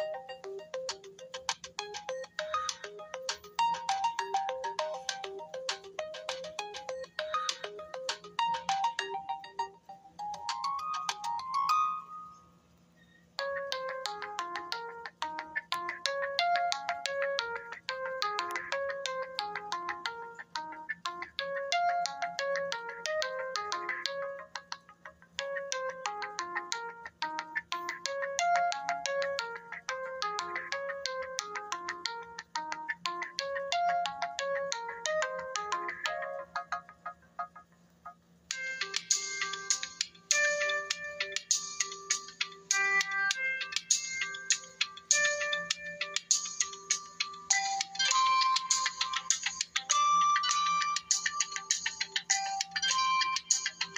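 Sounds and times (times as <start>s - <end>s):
phone ringtone melody: 0.0s - 12.4s, 13.4s - 53.9s.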